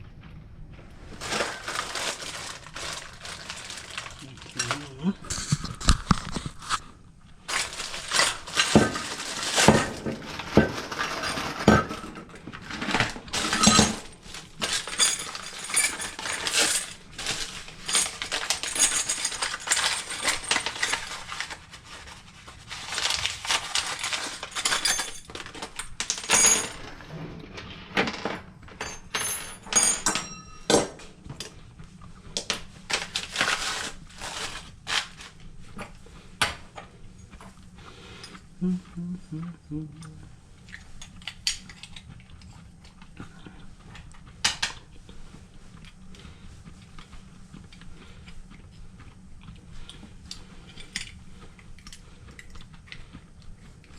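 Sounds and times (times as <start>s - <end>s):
metal parts clinking and clattering: 1.2s - 4.9s, 7.5s - 21.8s, 22.7s - 27.0s, 28.0s - 31.6s.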